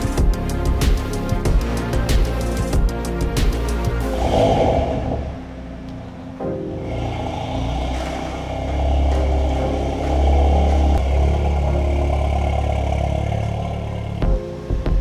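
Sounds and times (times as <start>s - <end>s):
car engine droning: 4.0s - 14.5s.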